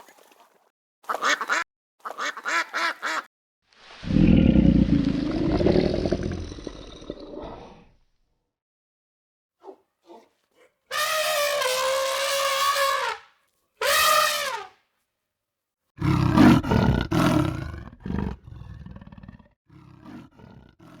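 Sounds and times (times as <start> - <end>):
animal roaring: 4.0 - 8.0, 16.0 - 21.0.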